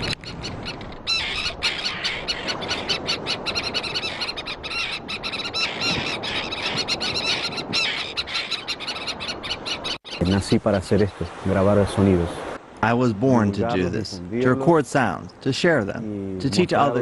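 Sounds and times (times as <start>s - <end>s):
bird colony squealing calls: 0.0s - 10.9s.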